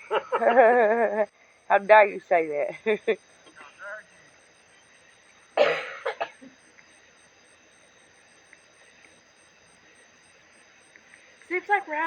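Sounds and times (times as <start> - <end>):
person coughing: 5.6 - 6.5.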